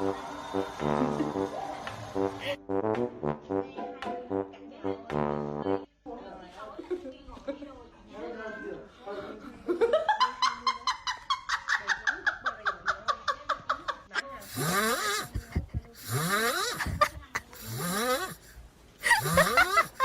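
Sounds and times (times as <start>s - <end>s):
snoring-like noisy breaths: 14.4s - 17.0s, 17.6s - 20.0s.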